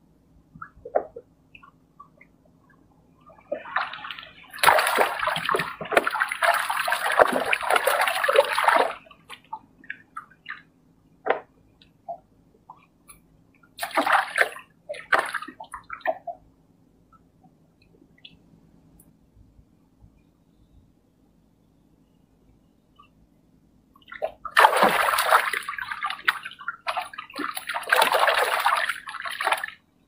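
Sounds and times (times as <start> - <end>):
water splashing and sloshing: 0.5 - 10.7, 11.3 - 16.5, 24.0 - 30.0.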